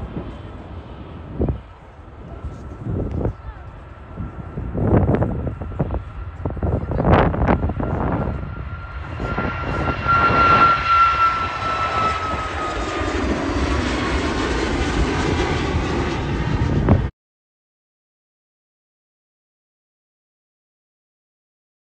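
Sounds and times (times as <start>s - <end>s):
airliner engines whining: 0.0s - 17.1s
wind buffeting microphone: 0.0s - 17.1s.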